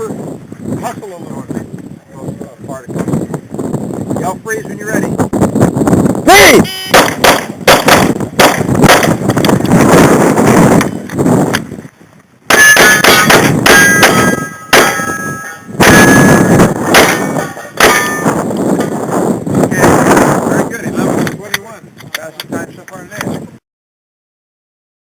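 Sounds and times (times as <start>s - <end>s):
rapid pistol shots: 7.0s - 9.3s, 12.5s - 15.1s, 15.8s - 18.2s
ringing metallic tones: 12.6s - 18.4s.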